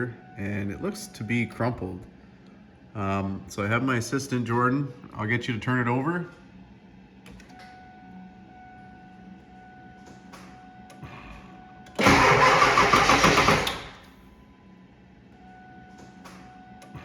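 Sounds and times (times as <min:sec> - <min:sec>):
diesel engine starter cranking: 0:12.0 - 0:14.1.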